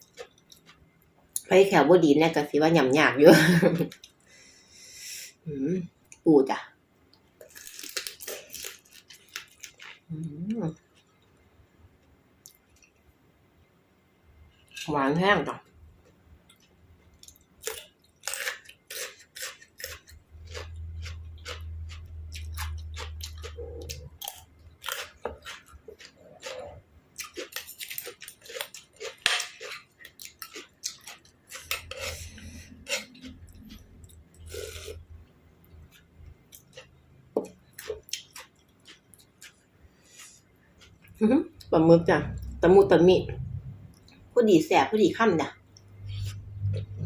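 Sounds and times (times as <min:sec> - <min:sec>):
crunchy chewing: 0:16.5 - 0:41.2.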